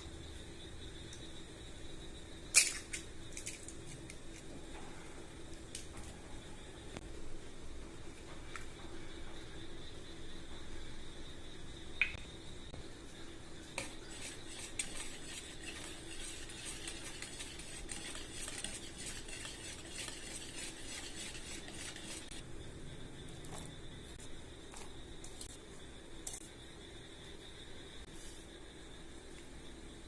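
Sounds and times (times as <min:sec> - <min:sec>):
utensil beating eggs in bowl: 0:13.8 - 0:22.4.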